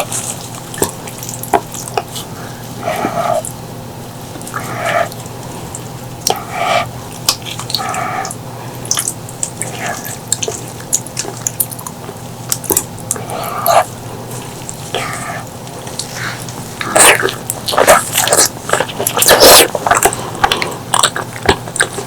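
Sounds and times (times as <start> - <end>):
steady low hum: 0.0 - 22.0
wet chewing and lip-smacking: 0.0 - 22.0
mouth clicks: 4.4 - 11.9, 12.5 - 13.9.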